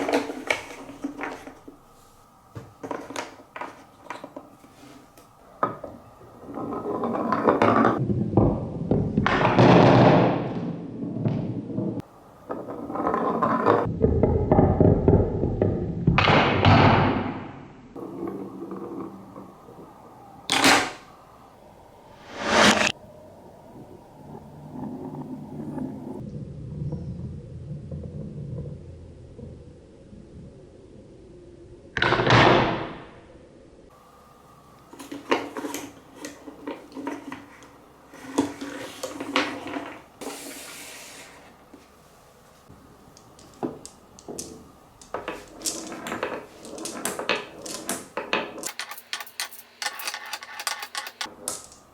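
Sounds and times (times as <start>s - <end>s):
smooth rolling hiss: 0.1s - 7.0s, 33.9s - 48.2s
balls rolling down wooden marble run: 5.6s - 16.7s, 18.0s - 19.9s, 43.1s - 51.9s
short rushing swells: 22.2s - 22.9s
balls clacking down wooden marble run: 43.2s - 51.8s.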